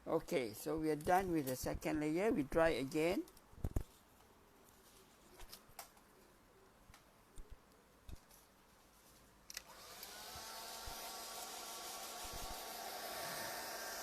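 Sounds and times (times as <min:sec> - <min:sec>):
hair dryer blowing hum: 0:09.6 - 0:14.0.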